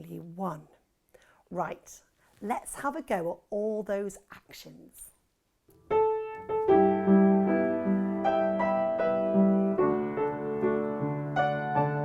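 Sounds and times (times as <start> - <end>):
piano playing a simple tune: 5.7 - 12.0.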